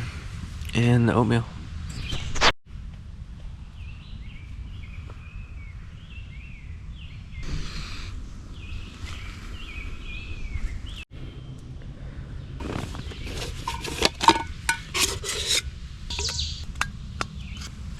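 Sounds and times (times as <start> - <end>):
songbirds singing: 3.6 - 14.1, 15.4 - 17.9.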